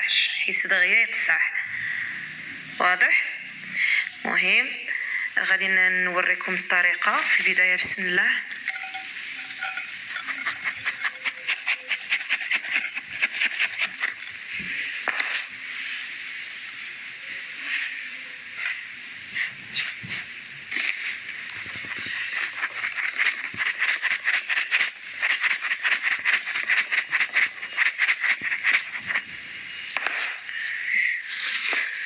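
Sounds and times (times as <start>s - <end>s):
hands rubbing semolina: 8.5s - 16.2s, 17.2s - 29.4s.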